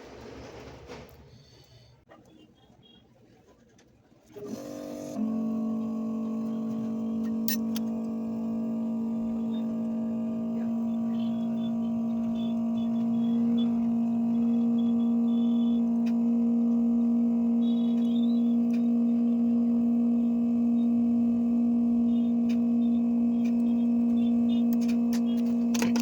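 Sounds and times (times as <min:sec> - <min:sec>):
clicks: 0:03.8 - 0:19.8, 0:21.9 - 0:26.0
steady electrical hum: 0:05.0 - 0:26.0.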